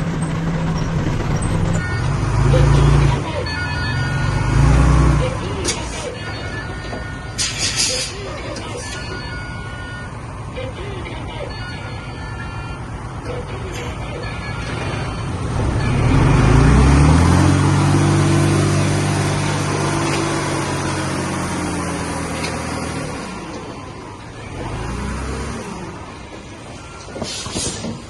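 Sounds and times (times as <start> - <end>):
heavy diesel engine revving: 0.0 - 5.8, 14.7 - 27.9.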